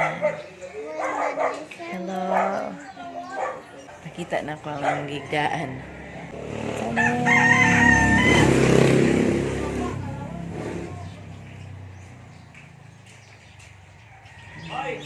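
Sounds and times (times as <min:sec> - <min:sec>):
rooster crowing: 0:05.1 - 0:09.1, 0:14.1 - 0:15.0.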